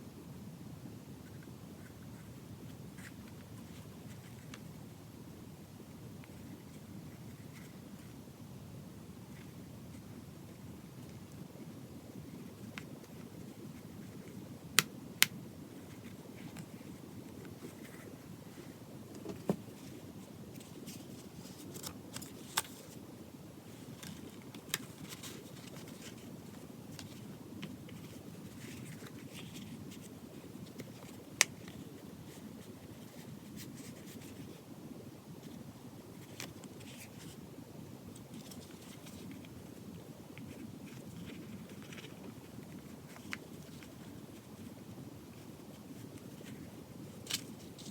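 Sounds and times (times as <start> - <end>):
low room hum: 0.0 - 47.9
clicks and taps of notebook handling: 19.1 - 19.9.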